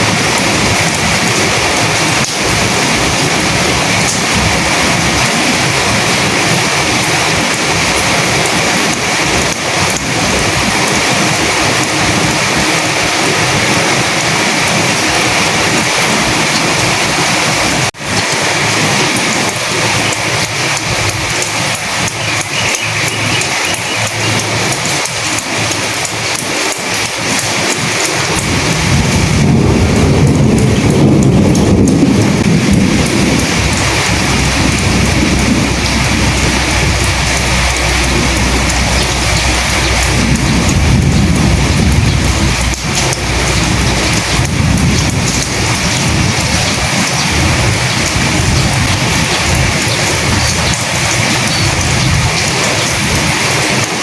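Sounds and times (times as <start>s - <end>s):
steady rain falling: 0.0s - 54.0s
low rumble: 28.3s - 53.3s.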